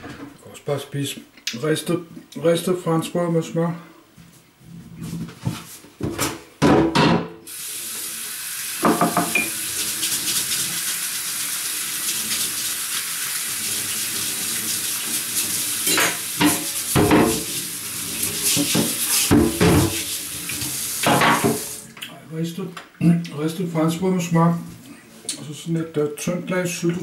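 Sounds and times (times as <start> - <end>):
dishes clattering: 6.2 - 7.4, 8.8 - 9.6, 15.8 - 17.5, 18.5 - 20.1, 21.0 - 21.7
water running into sink: 7.5 - 22.0.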